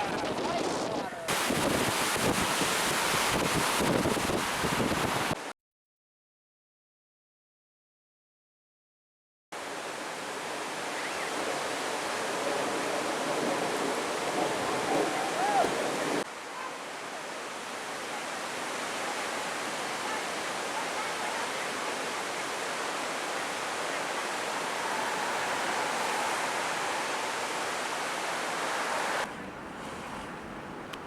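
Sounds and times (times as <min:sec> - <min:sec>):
waterfall roaring: 0:00.0 - 0:05.5, 0:09.6 - 0:30.1.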